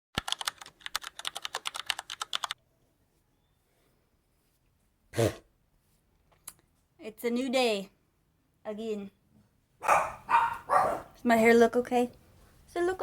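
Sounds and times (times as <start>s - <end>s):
rapid clicking: 0.2s - 2.6s.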